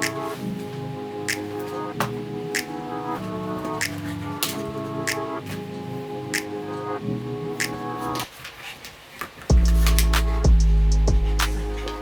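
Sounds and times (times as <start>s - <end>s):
sustained music chords: 9.5s - 12.0s.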